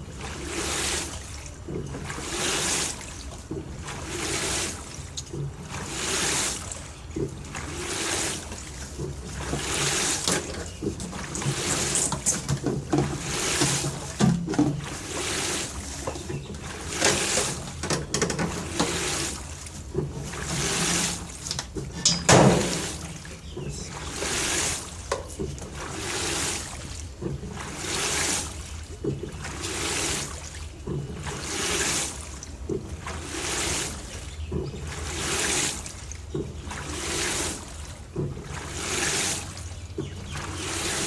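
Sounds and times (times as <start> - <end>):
washing machine water swishing: 0.0 - 41.0
washing machine thud: 12.4 - 14.9, 21.8 - 23.2.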